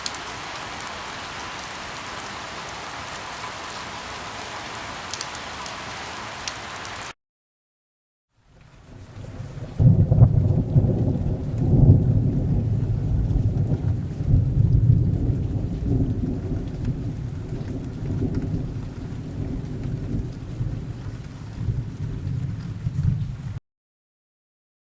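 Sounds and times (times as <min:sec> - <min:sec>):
light rain hiss: 0:00.0 - 0:07.1, 0:08.5 - 0:23.6
thunder rumbling: 0:08.8 - 0:23.6.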